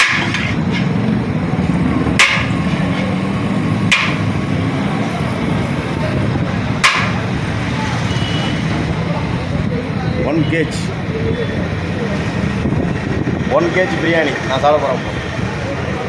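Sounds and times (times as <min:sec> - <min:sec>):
sharp knocks: 0:00.0 - 0:01.0, 0:02.0 - 0:03.2, 0:03.8 - 0:04.4, 0:06.8 - 0:07.4.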